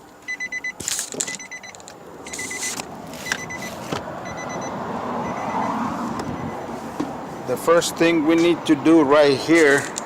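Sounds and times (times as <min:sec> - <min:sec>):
electronic warning chime beeping: 0:00.3 - 0:06.7.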